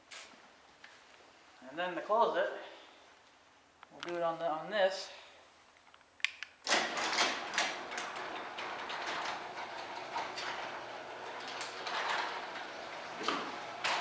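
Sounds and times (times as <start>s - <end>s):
garage door rattling: 6.6s - 14.0s.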